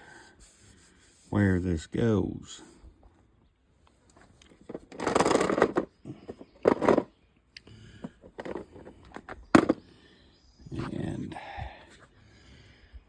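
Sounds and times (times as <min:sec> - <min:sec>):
rustling and scraping of parts: 0:03.0 - 0:07.2, 0:08.0 - 0:09.9.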